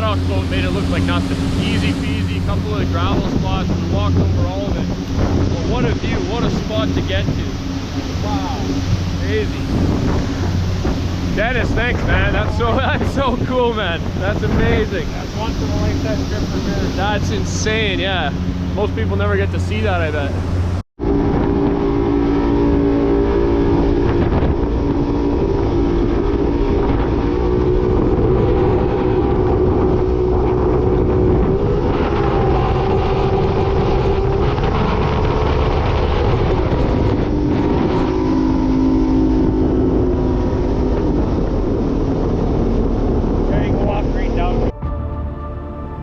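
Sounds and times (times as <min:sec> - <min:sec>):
jet boat engine running: 0:00.0 - 0:46.0
wind on microphone: 0:00.0 - 0:46.0.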